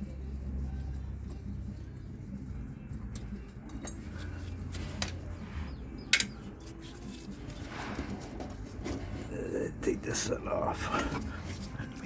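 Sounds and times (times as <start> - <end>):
tools and bolts clinking on metal: 3.1 - 5.2, 6.1 - 6.5.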